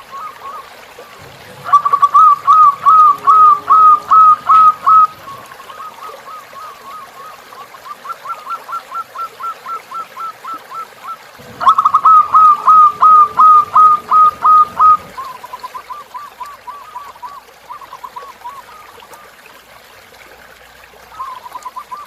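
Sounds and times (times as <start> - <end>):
dove cooing: 0.0 - 19.2.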